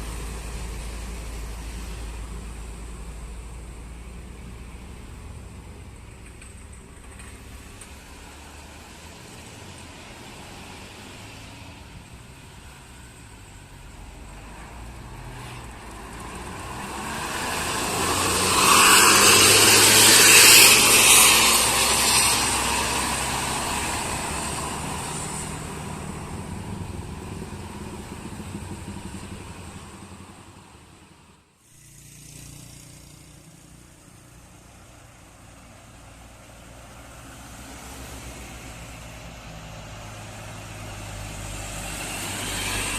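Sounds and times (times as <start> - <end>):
traffic noise: 0.0 - 42.9
vehicle passing by: 14.2 - 42.9.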